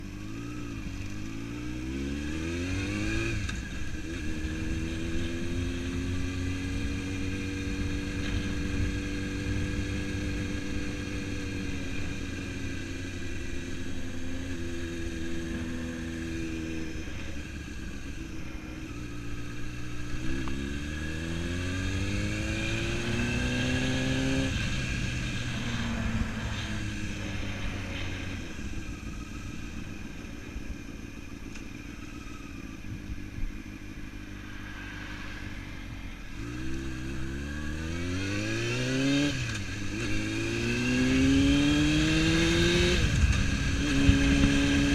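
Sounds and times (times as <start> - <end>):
motorcycle engine revving: 0.0 - 44.9.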